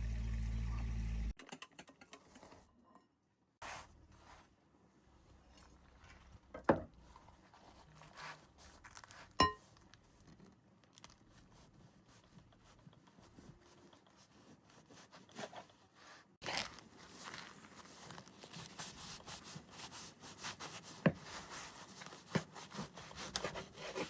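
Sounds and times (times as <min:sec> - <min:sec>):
small clicks and rustles: 0:07.1 - 0:14.3.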